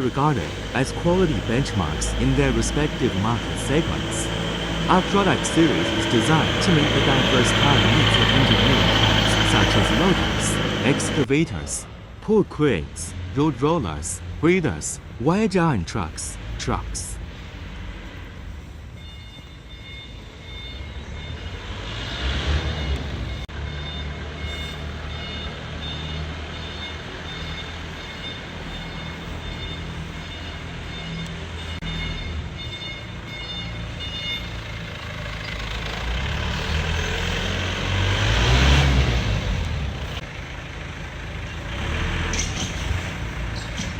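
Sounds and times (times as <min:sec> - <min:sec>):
reversing alarm beeping: 0:00.0 - 0:11.7, 0:18.2 - 0:38.9
vehicle passing close: 0:00.0 - 0:11.9, 0:21.1 - 0:32.6, 0:33.8 - 0:43.9
heavy vehicle engine running: 0:00.0 - 0:43.9.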